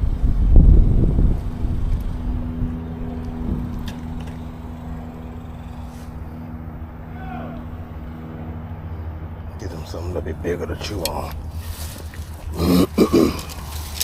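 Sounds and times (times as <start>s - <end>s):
heavy low rumble: 0.0s - 14.0s
road traffic hum: 0.0s - 14.0s.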